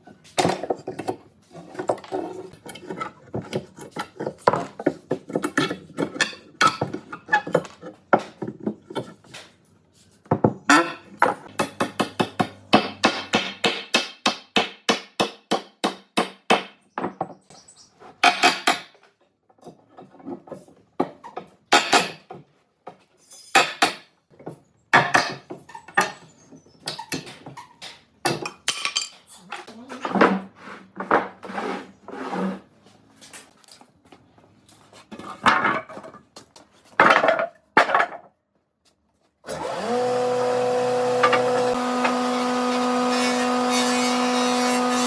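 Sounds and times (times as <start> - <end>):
hammering on wood: 11.5 - 16.8.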